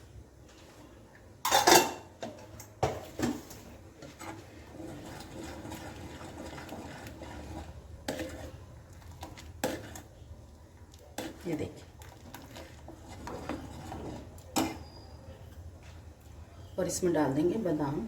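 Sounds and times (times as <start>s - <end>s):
spoon stirring swishing: 3.6s - 16.2s.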